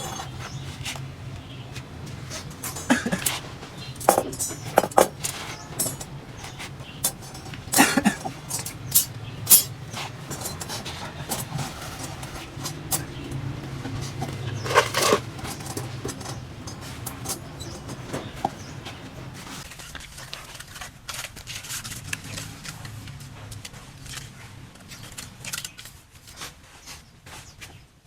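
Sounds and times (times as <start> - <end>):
steel rebar clinking: 0.0 - 0.7, 2.0 - 19.6
steady low hum: 0.0 - 19.6.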